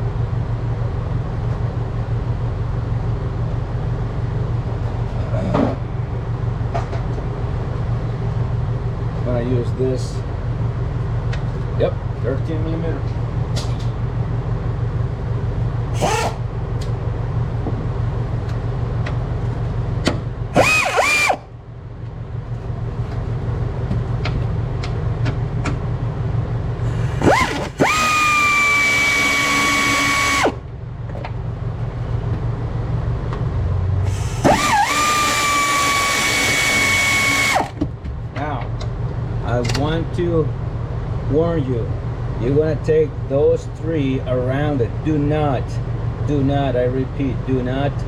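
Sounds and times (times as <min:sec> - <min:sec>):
steady low hum: 0:00.0 - 0:48.0
cordless power tool whine: 0:16.0 - 0:16.5, 0:20.5 - 0:21.5, 0:26.9 - 0:30.6, 0:34.0 - 0:37.8.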